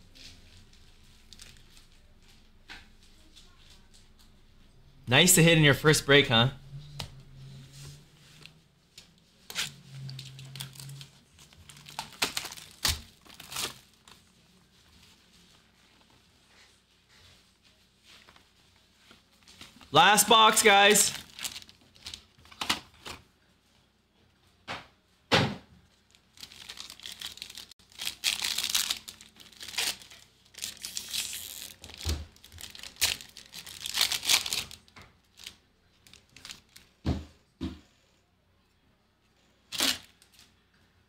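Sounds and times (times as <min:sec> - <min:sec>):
plastic wrapping tearing and crinkling: 0:01.1 - 0:02.1, 0:09.5 - 0:14.3, 0:20.7 - 0:23.2, 0:26.1 - 0:36.9, 0:39.7 - 0:40.5.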